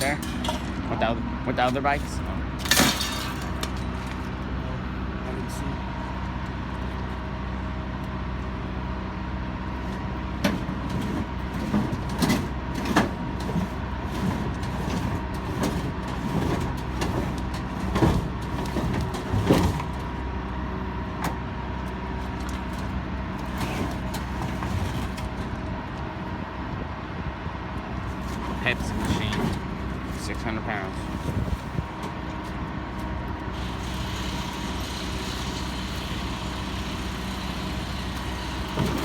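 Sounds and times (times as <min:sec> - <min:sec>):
scrap metal clanking and dropping: 0:00.0 - 0:04.2, 0:10.4 - 0:20.2, 0:23.4 - 0:25.5, 0:28.2 - 0:30.4, 0:38.8 - 0:39.0.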